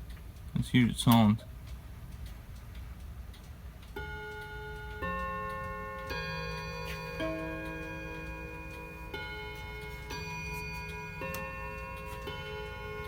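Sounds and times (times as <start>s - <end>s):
faint clock ticking: 0.0s - 13.0s
clock chiming struck notes: 4.0s - 13.0s.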